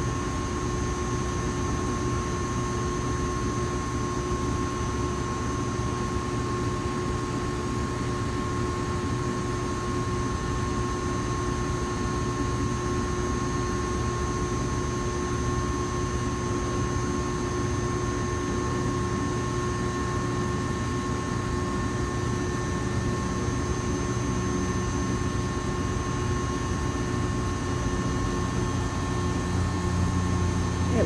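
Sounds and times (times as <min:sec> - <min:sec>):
cooling fans blowing: 0:26.8 - 0:31.0
electrical equipment humming: 0:30.2 - 0:31.0.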